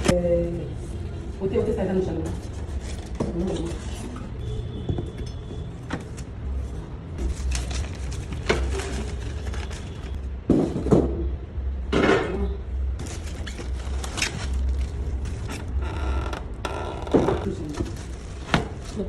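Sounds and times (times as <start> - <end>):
metal parts knocking and scraping: 2.4 - 11.0.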